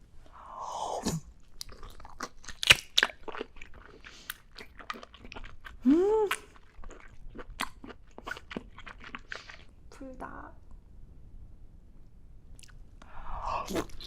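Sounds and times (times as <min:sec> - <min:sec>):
wet chewing clicks and smacks: 0:01.4 - 0:09.7, 0:12.5 - 0:12.8.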